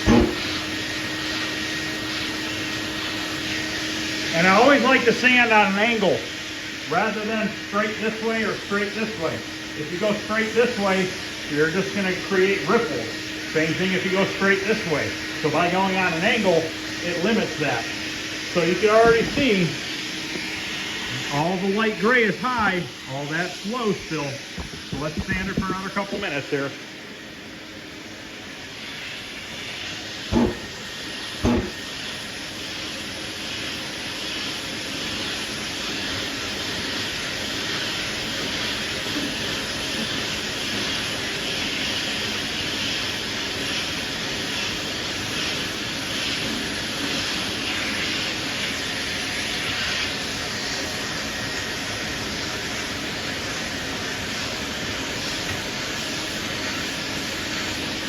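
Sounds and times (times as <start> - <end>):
sharp knocks: 0.0 - 0.4, 24.5 - 25.8, 30.3 - 30.7, 31.4 - 31.8.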